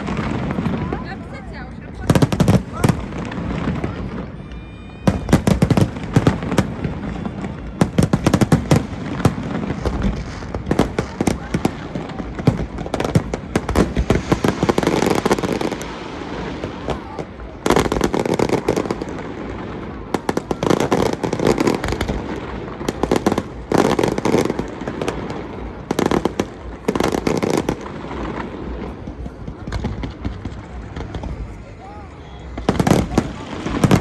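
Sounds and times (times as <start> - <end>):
firework bangs and crackling: 0.0 - 34.0.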